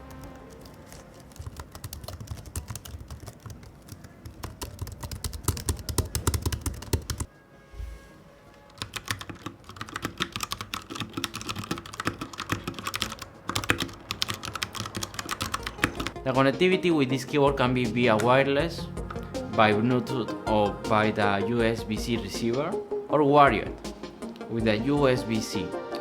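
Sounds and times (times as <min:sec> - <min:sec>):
laptop keyboard typing: 0:00.0 - 0:07.3, 0:08.8 - 0:16.2
mechanical keyboard typing: 0:00.0 - 0:07.3, 0:08.8 - 0:16.2.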